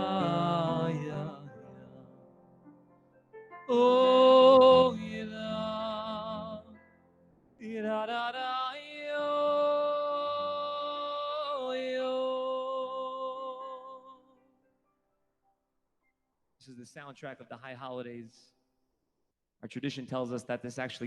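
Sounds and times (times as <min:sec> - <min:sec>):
man singing slow wordless melody: 0:00.0 - 0:02.4, 0:03.7 - 0:07.0, 0:07.6 - 0:14.4.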